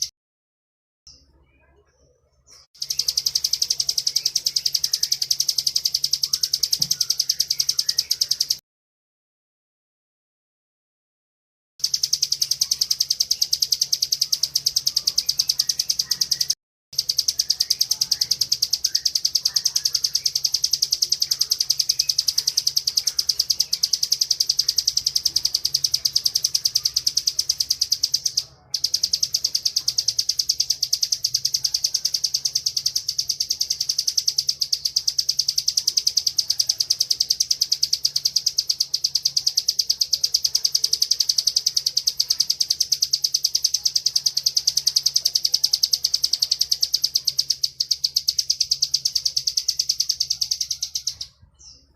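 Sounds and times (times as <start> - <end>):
bird high-pitched trill: 2.5 - 8.6, 11.8 - 51.9.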